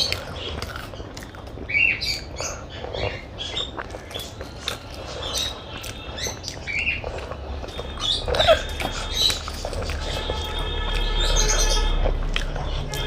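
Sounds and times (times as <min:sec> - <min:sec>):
wet chewing and lip smacks: 0:00.0 - 0:13.0.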